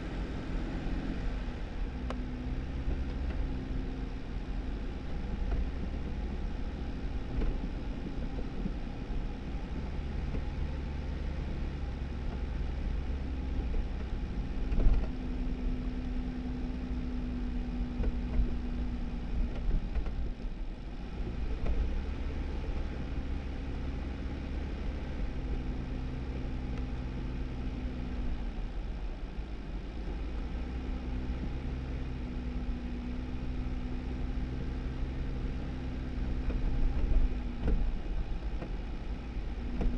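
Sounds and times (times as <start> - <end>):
car engine and tyres rumbling: 0.0 - 39.9
car knocking over road bumps: 36.3 - 39.9.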